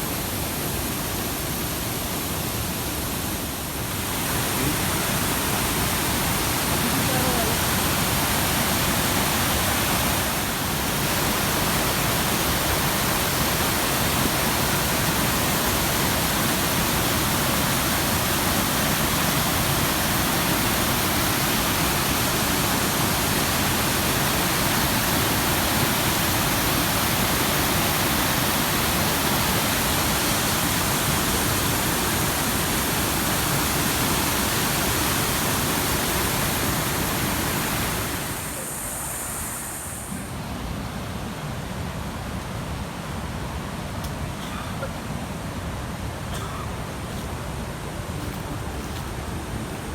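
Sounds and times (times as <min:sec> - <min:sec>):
waterfall rushing: 0:00.0 - 0:49.9.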